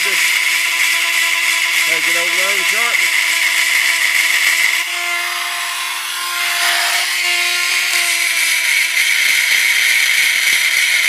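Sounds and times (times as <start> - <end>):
grinding wheel hissing on chain: 0.0 - 4.9
grinder motor whine: 0.0 - 11.0
person speaking: 1.8 - 3.2.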